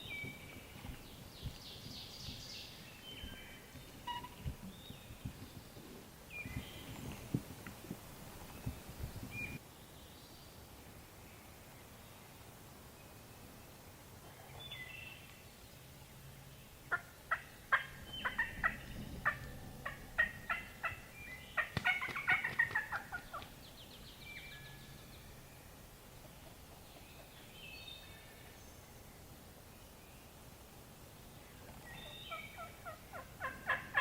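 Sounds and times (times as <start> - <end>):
faint songbird chirps: 0.0 - 7.2, 8.4 - 30.5, 31.1 - 33.7
wild turkey calling: 3.2 - 4.5, 16.9 - 23.6, 31.8 - 34.0.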